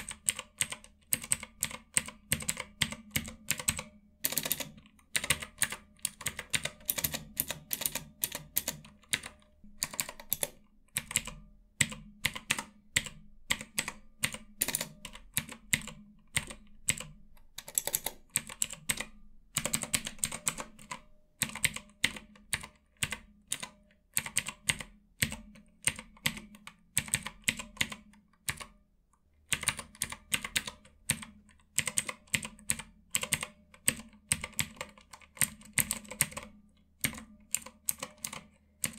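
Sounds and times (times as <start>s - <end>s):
clicky keyboard keys typing: 0.0s - 28.8s, 29.4s - 38.9s.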